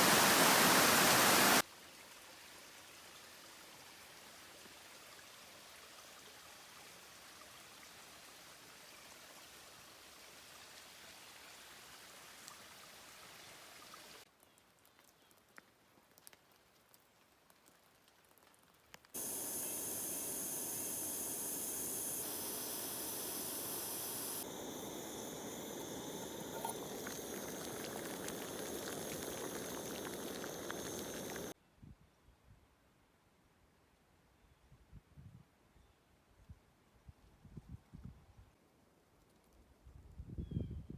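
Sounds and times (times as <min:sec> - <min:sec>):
water rushing: 0:00.0 - 0:01.6, 0:19.2 - 0:31.6
faint water drips: 0:19.2 - 0:31.6.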